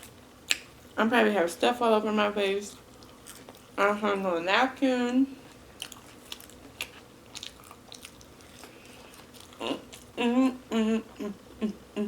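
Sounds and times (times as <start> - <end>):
person chewing food: 2.8 - 3.8, 5.4 - 10.2.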